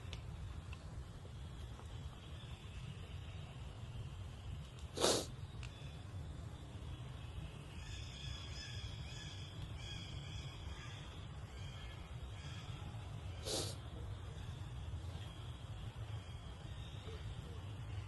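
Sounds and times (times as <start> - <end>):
baby monkey snorting: 5.0 - 5.3, 13.4 - 13.8.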